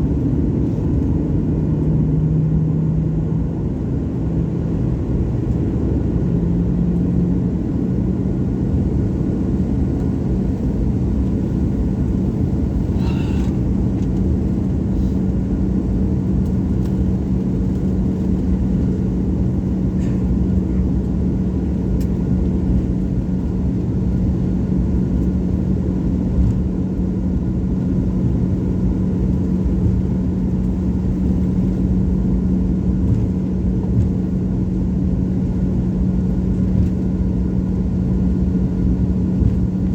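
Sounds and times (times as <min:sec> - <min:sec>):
jet airliner engines rumbling: 0:00.0 - 0:39.9.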